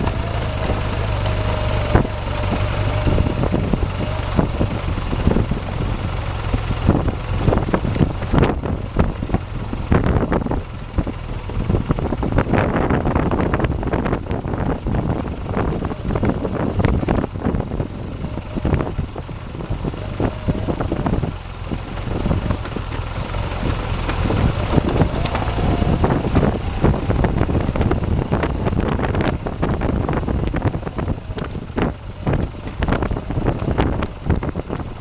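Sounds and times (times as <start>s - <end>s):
motorcycle engine running: 0.0s - 35.0s
wind buffeting microphone: 0.0s - 35.0s
knocks and rattles: 14.2s - 35.0s.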